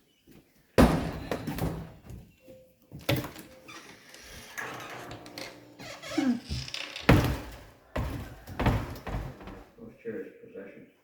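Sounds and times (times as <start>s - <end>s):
door creak: 3.0s - 9.8s
door knocks: 4.6s - 9.7s.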